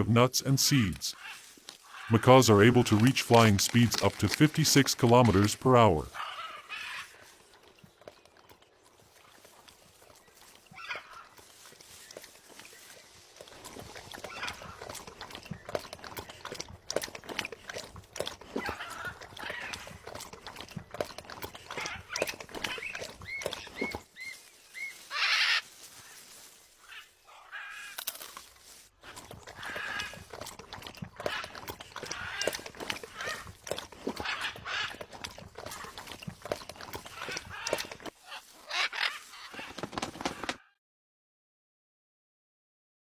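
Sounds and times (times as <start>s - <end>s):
macaw chirping and squawking: 1.1s - 2.2s, 6.1s - 7.4s, 10.2s - 13.0s, 21.6s - 28.0s, 28.7s - 30.4s, 31.0s - 35.2s, 37.0s - 39.8s
beak clicking and crunching coconut: 2.7s - 5.6s, 6.8s - 24.3s, 27.8s - 38.2s.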